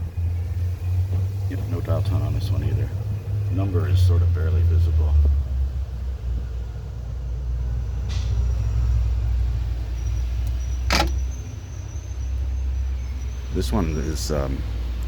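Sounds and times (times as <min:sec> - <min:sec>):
street traffic rumble: 0:00.0 - 0:15.0
sharp click: 0:10.5 - 0:11.2.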